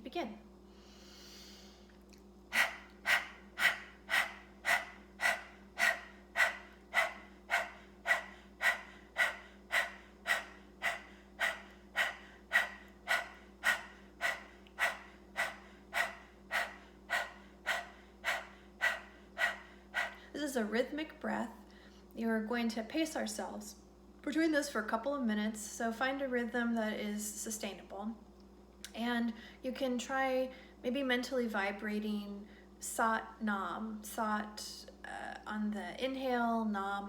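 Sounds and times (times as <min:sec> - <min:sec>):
woman panting rhythmically: 0:02.5 - 0:20.5.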